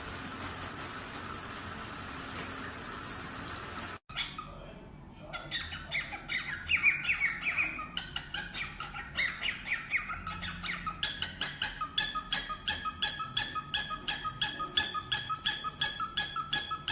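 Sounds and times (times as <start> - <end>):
parrot squawking: 4.1 - 16.9.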